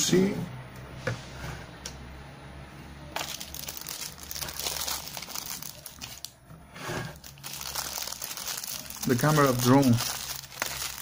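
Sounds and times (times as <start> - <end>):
plastic packaging crinkling: 3.2 - 6.4, 7.1 - 11.0.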